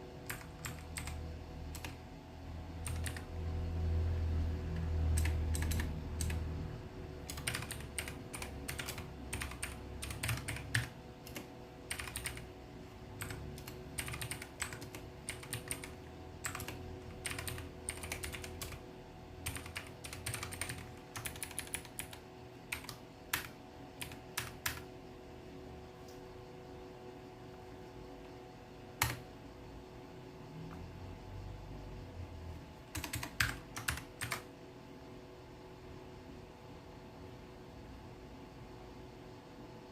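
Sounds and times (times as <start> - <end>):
mechanical keyboard typing: 0.2 - 2.0, 2.8 - 3.3, 5.1 - 6.5, 7.2 - 12.5, 13.2 - 18.8, 19.4 - 24.9, 29.0 - 29.2, 32.9 - 34.5.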